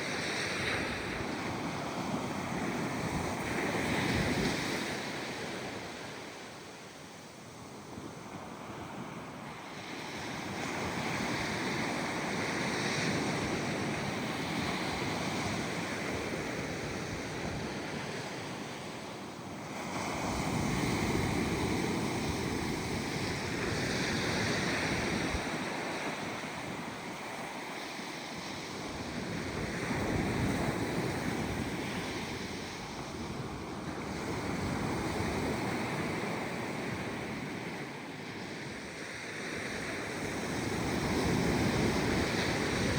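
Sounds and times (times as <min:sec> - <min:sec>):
ocean waves breaking on beach: 0:00.0 - 0:42.9
wind on microphone: 0:19.8 - 0:27.4, 0:40.2 - 0:42.9.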